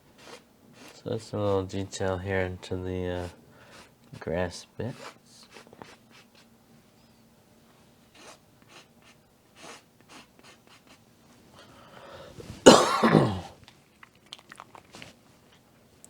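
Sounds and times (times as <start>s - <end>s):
brush strokes on canvas: 3.2s - 6.5s
person coughing: 12.6s - 13.6s.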